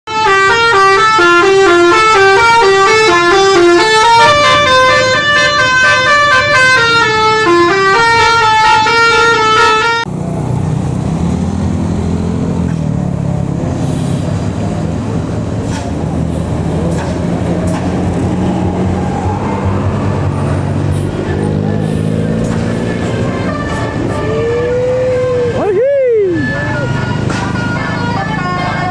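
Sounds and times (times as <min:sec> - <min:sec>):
bus horn playing melody: 0:00.1 - 0:10.2, 0:19.8 - 0:25.7, 0:26.3 - 0:28.9
bus engine running: 0:00.1 - 0:28.9.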